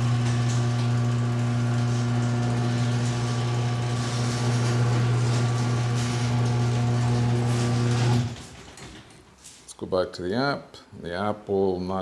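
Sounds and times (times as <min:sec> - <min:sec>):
garage door opener motor humming: 0:00.0 - 0:09.2.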